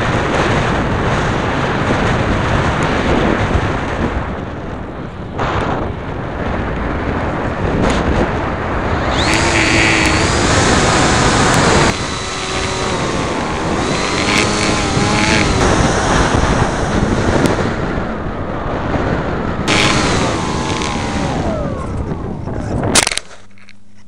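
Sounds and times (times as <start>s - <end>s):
wind rumble on microphone: 0.0s - 24.0s
electric motor and propeller whining: 7.9s - 23.7s.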